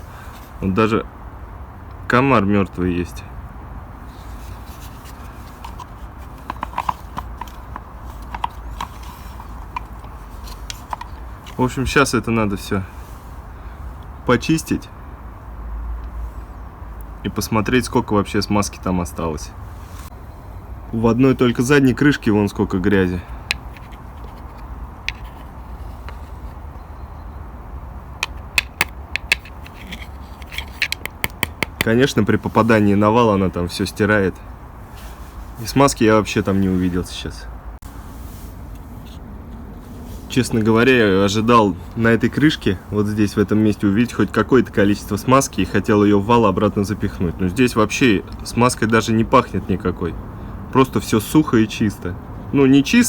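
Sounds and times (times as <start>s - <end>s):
small parts clicking and knocking: 5.6s - 11.6s, 23.4s - 26.5s, 28.2s - 31.9s.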